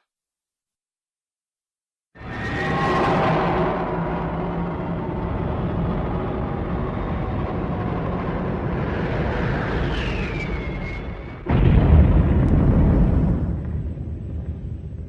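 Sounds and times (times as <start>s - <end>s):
deep blast: 11.5s - 15.0s.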